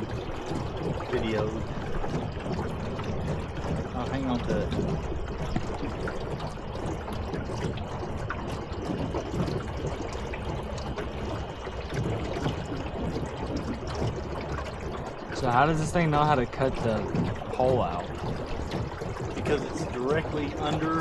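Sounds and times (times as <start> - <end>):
small splashes: 0.0 - 21.0
water lapping against boat hull: 0.0 - 21.0.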